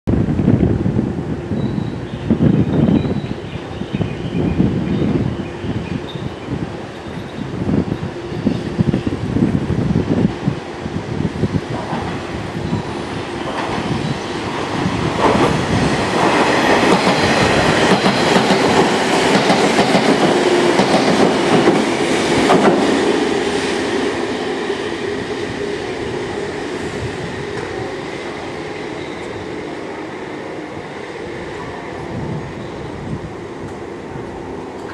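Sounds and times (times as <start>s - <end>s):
train running rush: 0.1s - 34.9s
train wheels clattering: 11.7s - 23.4s.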